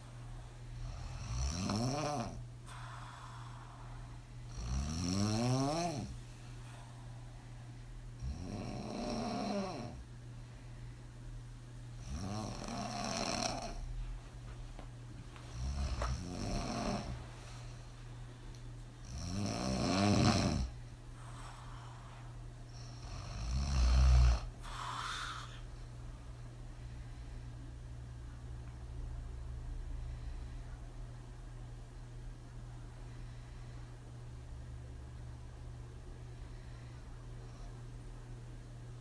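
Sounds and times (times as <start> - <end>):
woman snoring: 0.8 - 6.2, 8.2 - 10.0, 12.0 - 13.9, 15.5 - 17.2, 19.0 - 20.8, 22.7 - 25.6.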